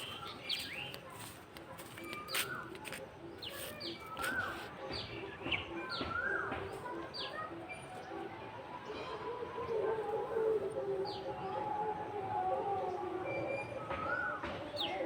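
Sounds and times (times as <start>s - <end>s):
birds chirping quick notes: 0.0s - 10.0s
whistled bird notes: 1.9s - 7.8s, 12.8s - 15.0s.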